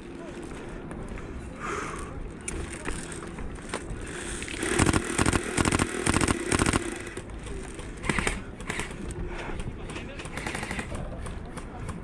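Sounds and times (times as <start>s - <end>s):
scattered clicks: 2.4s - 12.0s
electric rifle firing bursts: 4.5s - 7.3s, 8.0s - 9.0s, 10.4s - 11.0s.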